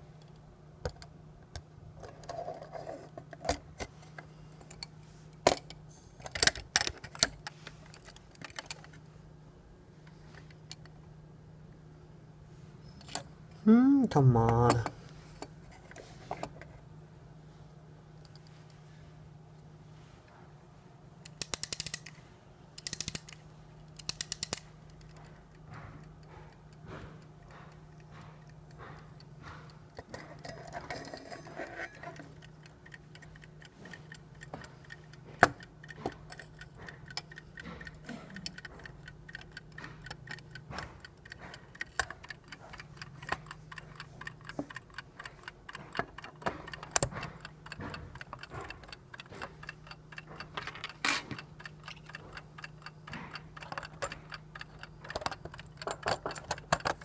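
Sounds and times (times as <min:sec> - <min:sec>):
clock ticking: 0:32.2 - 0:57.0.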